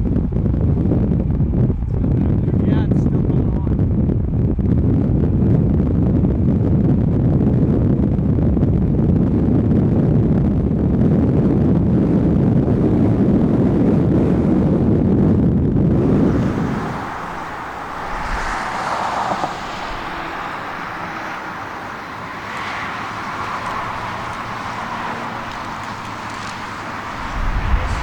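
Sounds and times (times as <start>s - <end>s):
wind rumble on microphone: 0.0s - 28.0s
vehicle road noise: 15.9s - 28.0s.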